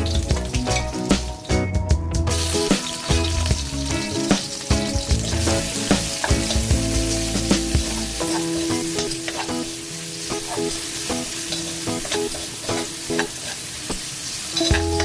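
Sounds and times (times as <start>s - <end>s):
food sizzling in a pan: 0.0s - 1.7s, 2.3s - 15.0s
spatula scraping a pan: 7.6s - 9.7s, 10.3s - 14.8s.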